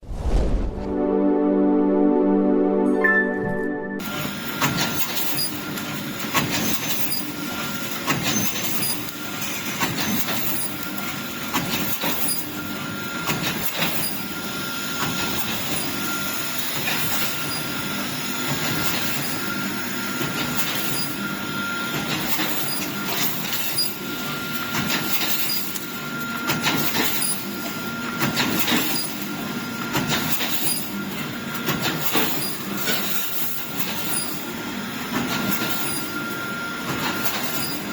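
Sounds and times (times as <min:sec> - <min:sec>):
faint steady machine whine: 0:04.0 - 0:37.9
welding machine clatter and hiss: 0:04.0 - 0:37.9.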